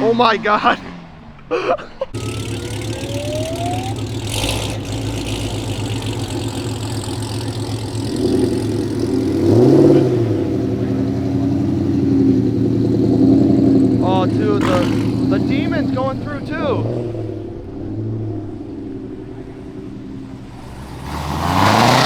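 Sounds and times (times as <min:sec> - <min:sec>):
car engine idling: 0:00.0 - 0:22.0
engine revving: 0:00.0 - 0:22.0
thin rising tone: 0:02.0 - 0:10.3.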